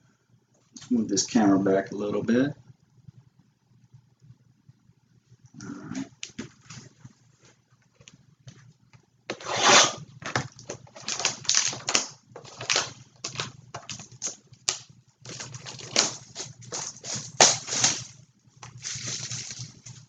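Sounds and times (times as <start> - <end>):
card packs rustling and scraping: 9.3 - 20.0.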